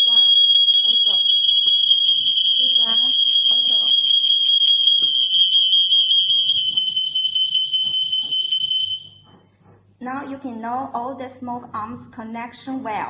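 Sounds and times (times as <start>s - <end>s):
smoke alarms high-pitched tone: 0.0s - 9.5s.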